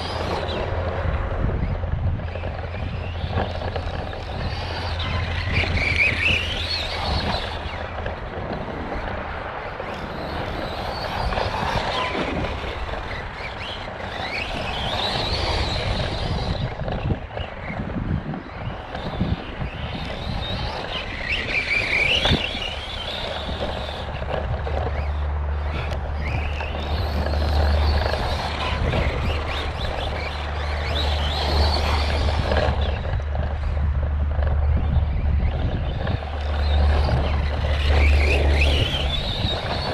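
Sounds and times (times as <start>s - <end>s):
rc truck motor whining: 0.0s - 39.9s
steady low rumble: 15.4s - 39.9s.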